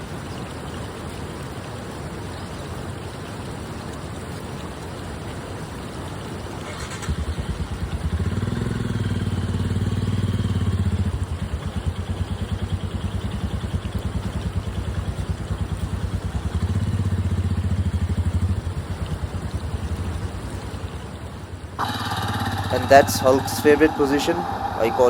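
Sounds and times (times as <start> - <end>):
motorcycle engine running: 6.6 - 25.0.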